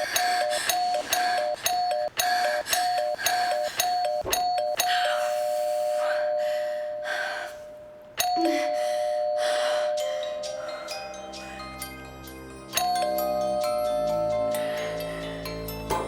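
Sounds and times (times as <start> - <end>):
two-tone doorbell chime: 6.0 - 16.0.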